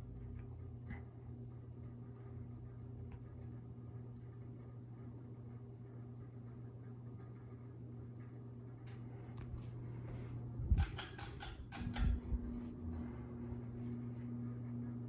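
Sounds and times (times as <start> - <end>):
ceiling fan motor humming: 0.0 - 15.0
sharp clicks and knocks: 10.7 - 12.3.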